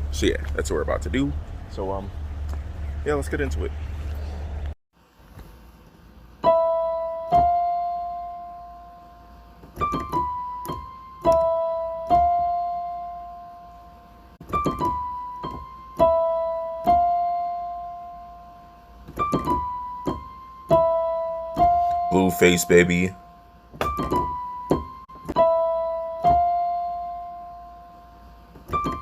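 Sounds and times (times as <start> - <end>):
piano notes: 6.4 - 29.0.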